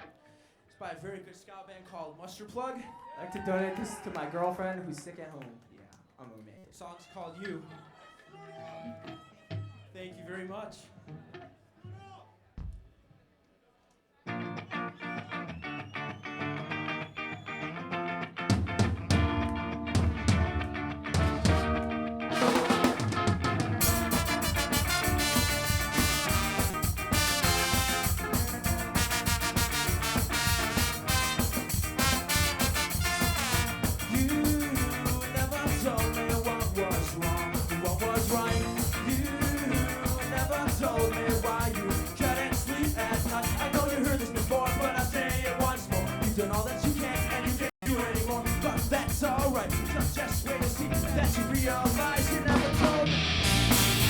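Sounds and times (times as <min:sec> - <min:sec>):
live ska band playing: 0:16.4 - 0:54.0.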